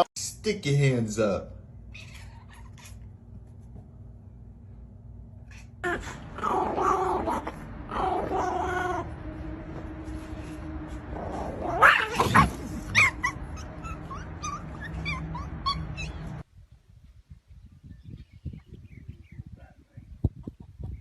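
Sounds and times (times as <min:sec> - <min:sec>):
pet animal whining: 0:01.9 - 0:03.1, 0:05.4 - 0:09.1, 0:11.2 - 0:16.4.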